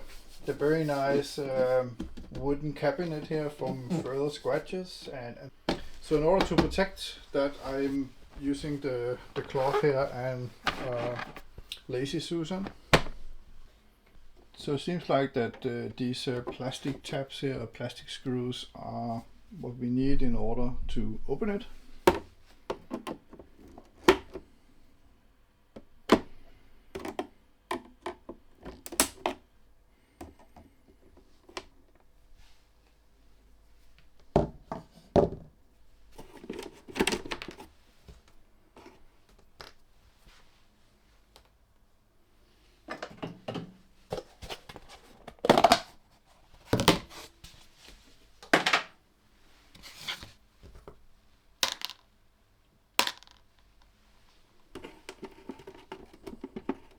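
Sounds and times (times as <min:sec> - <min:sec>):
clicks and knocks of handling a case: 0:10.5 - 0:11.8, 0:25.8 - 0:29.4, 0:42.9 - 0:46.0, 0:54.8 - 0:56.9.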